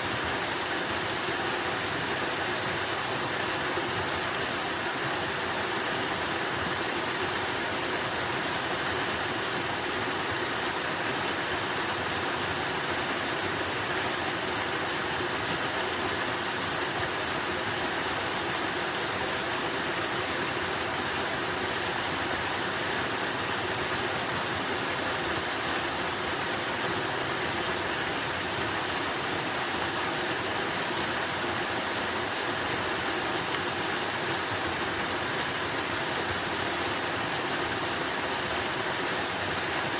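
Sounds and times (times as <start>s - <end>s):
water rushing: 0.0s - 39.9s.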